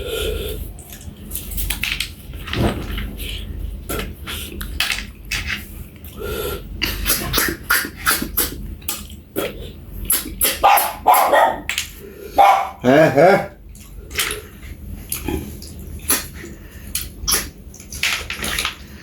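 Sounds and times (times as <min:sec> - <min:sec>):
chewing with wet lip-smacks: 0:13.7 - 0:17.6.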